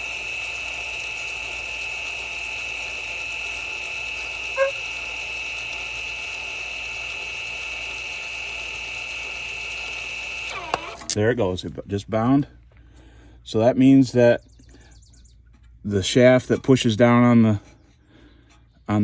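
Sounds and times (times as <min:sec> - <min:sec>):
electric motor whining: 0:00.0 - 0:11.3.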